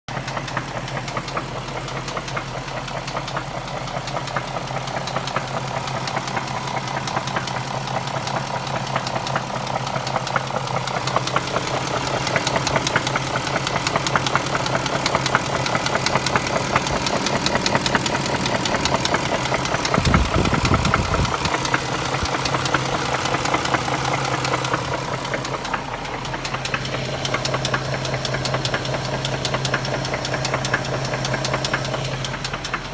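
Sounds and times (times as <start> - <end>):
car engine knocking: 0.1 - 32.9
low rumble: 16.4 - 23.5.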